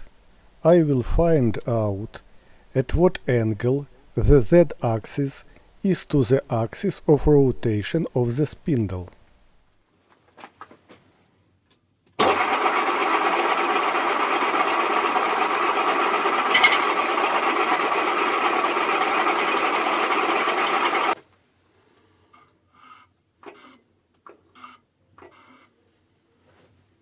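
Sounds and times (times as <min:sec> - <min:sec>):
milling machine spindle motor running: 0:12.2 - 0:21.2.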